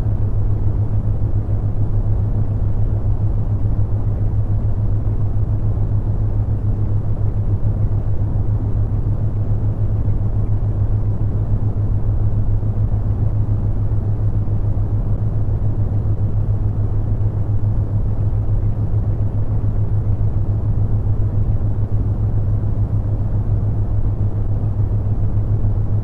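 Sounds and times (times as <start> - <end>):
constant low tone hum: 0.0 - 26.0.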